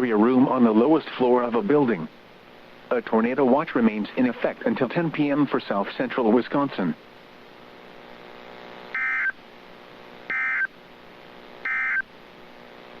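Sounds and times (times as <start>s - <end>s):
faint steady hum: 0.0s - 13.0s
warbling digital data tone bursts: 9.0s - 9.4s, 10.3s - 10.7s, 11.6s - 12.0s.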